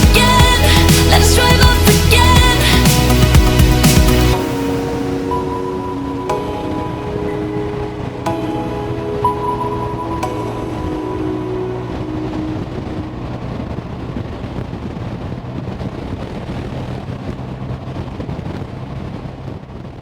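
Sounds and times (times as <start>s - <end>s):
music track: 0.0s - 14.3s
wind buffeting microphone: 4.3s - 20.0s.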